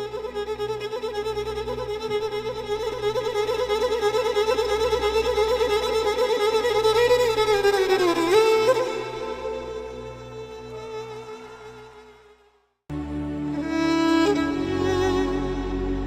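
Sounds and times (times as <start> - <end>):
violin long note with vibrato: 12.9 - 16.0.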